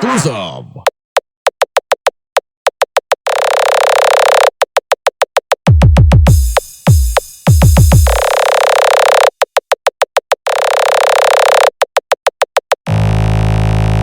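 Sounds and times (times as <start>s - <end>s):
kick drums with deep bass: 5.7s - 8.3s
synth percussion stabs: 5.7s - 8.6s.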